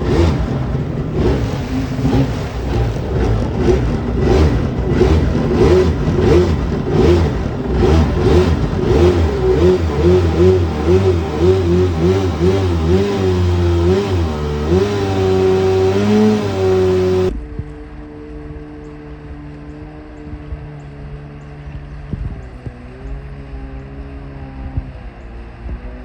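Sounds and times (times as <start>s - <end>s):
two-stroke engine revving: 0.0s - 17.4s.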